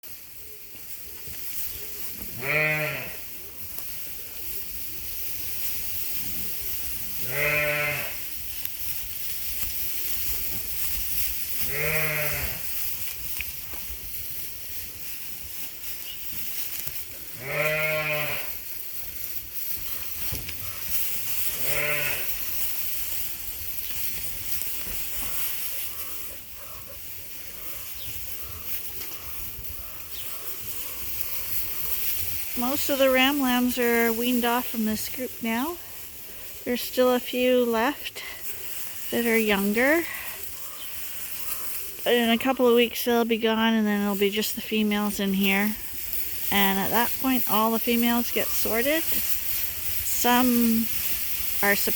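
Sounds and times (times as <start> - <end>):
steady hiss: 0.0 - 51.9
sheep bleating: 2.2 - 3.3, 7.1 - 8.2, 11.6 - 12.7, 17.4 - 18.6, 21.5 - 22.4.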